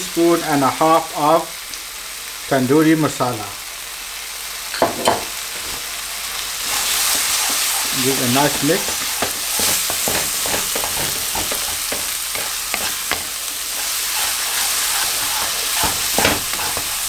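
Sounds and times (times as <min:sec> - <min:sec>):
curry sizzling in oil: 0:00.0 - 0:17.0
spatula scraping and knocking pan: 0:06.6 - 0:17.0.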